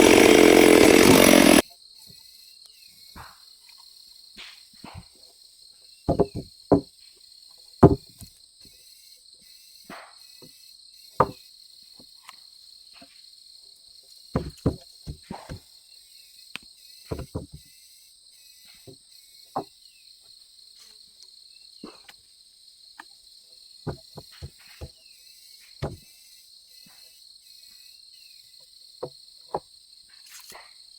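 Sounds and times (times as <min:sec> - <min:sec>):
insects chirring: 0:00.0 - 0:30.9
knocks and thuds: 0:06.1 - 0:06.9, 0:07.8 - 0:08.2, 0:14.4 - 0:15.6, 0:17.1 - 0:17.6, 0:23.9 - 0:25.0, 0:25.8 - 0:26.0.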